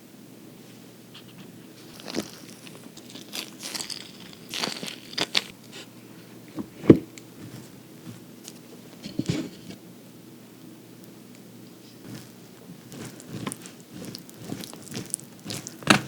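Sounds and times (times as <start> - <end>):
crinkly crackling rustles: 0.6 - 9.8, 11.7 - 16.0
crisp bites and crunching: 1.8 - 5.6, 12.1 - 16.0.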